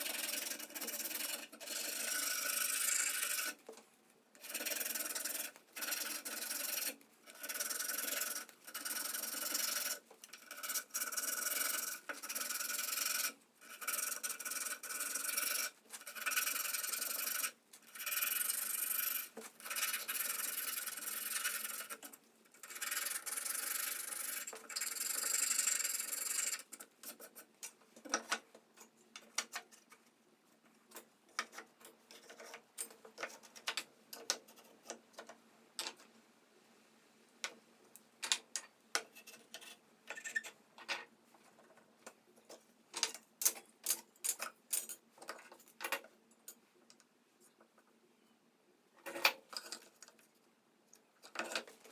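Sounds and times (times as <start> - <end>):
hand tool rasping on wood: 0.0 - 3.6, 4.4 - 22.0.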